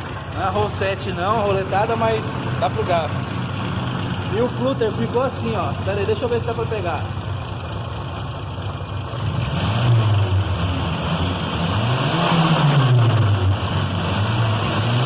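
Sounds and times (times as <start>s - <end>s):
loud car engine revving: 9.0s - 15.0s.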